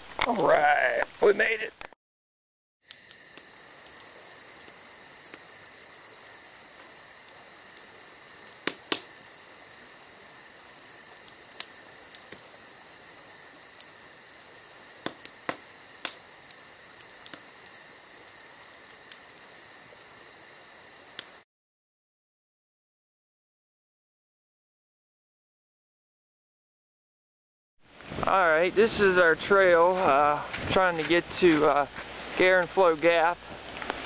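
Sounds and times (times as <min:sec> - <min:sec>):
crickets singing: 0:02.8 - 0:21.4
sharp clicks and taps: 0:02.9 - 0:09.4, 0:13.5 - 0:19.4.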